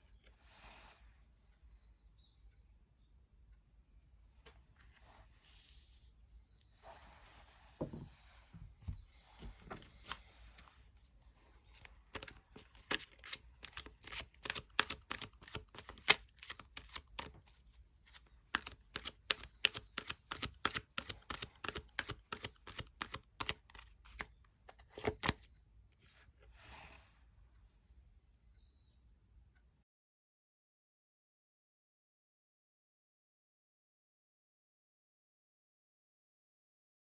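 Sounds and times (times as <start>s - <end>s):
cards shuffling: 11.7s - 25.5s.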